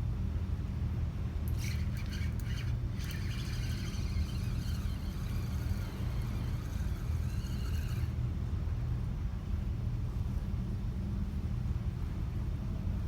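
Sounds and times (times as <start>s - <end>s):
wavering whistly tones: 1.6s - 8.2s.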